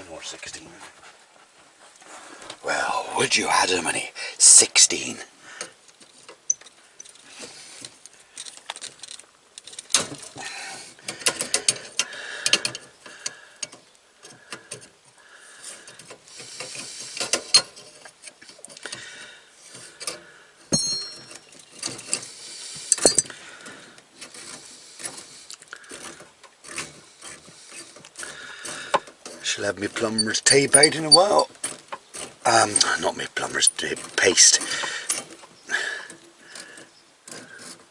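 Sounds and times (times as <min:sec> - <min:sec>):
short metallic ring: 0:20.7 - 0:21.4.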